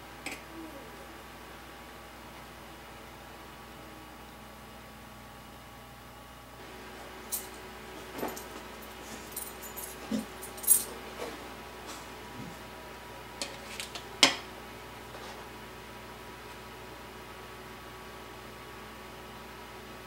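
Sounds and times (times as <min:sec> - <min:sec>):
small metal tools clinking: 0:07.3 - 0:07.6, 0:08.2 - 0:10.9.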